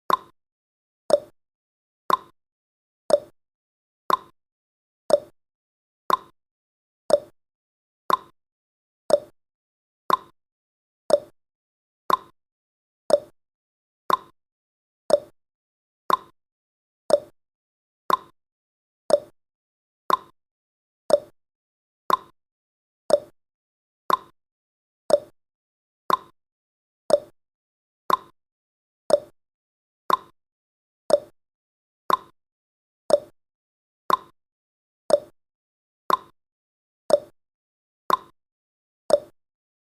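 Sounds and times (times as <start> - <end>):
clock ticking: 0.1 - 0.3, 2.1 - 2.3, 4.1 - 4.3, 6.1 - 6.3, 8.1 - 8.3, 10.1 - 10.3, 12.1 - 12.3, 14.1 - 14.3, 16.1 - 16.3, 17.1 - 17.3, 18.1 - 18.3, 20.1 - 20.3, 21.1 - 21.3, 22.1 - 22.3, 24.1 - 24.3, 26.1 - 26.3, 28.1 - 28.3, 30.1 - 30.3, 31.1 - 31.3, 32.1 - 32.3, 33.1 - 33.4, 34.1 - 34.3, 35.1 - 35.4, 36.1 - 36.4, 37.1 - 37.4, 38.1 - 38.3, 39.1 - 39.4.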